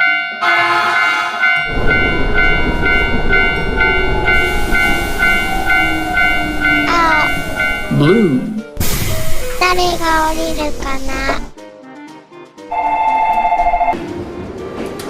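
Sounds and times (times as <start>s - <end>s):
railroad crossing bell ringing: 0.0s - 8.6s, 12.7s - 14.0s
train rumbling past: 0.4s - 11.5s, 12.7s - 15.0s.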